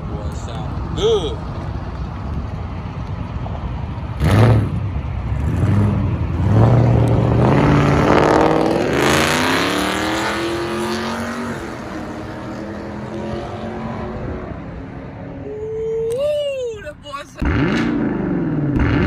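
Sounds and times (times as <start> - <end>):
car engine revving: 3.5 - 15.4, 17.4 - 19.0.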